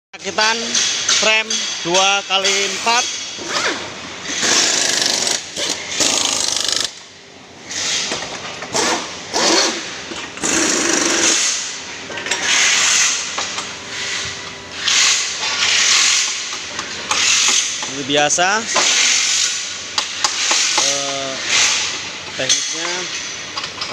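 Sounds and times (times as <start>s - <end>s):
power tool running in bursts: 10.4s - 11.6s.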